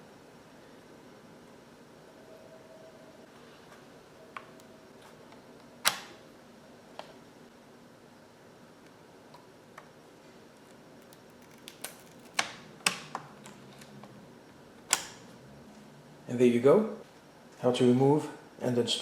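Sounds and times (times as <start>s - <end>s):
ram module clicking into slot: 5.8s - 6.2s.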